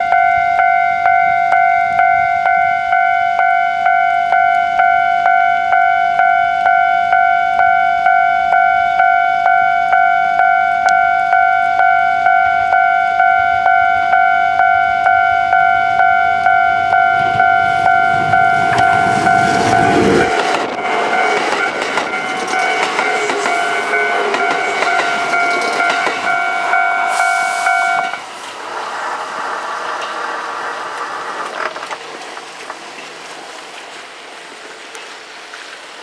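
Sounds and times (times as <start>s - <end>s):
level crossing warning bell: 0.0s - 28.8s.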